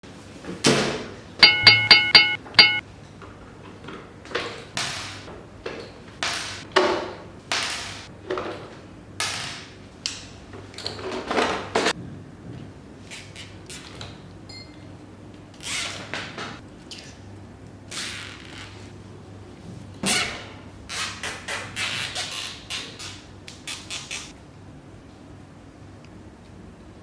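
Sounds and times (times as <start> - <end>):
bright ringing chime notes: 1.4 - 2.8.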